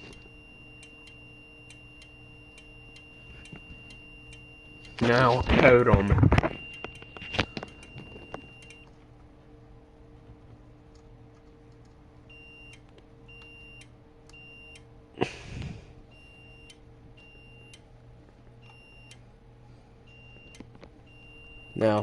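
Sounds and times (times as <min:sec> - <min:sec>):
faint high electronic alarm beeps: 0:00.0 - 0:05.8, 0:06.4 - 0:08.9, 0:12.3 - 0:14.8, 0:16.1 - 0:17.8, 0:18.6 - 0:19.2, 0:20.1 - 0:22.0
low hum: 0:00.0 - 0:22.0.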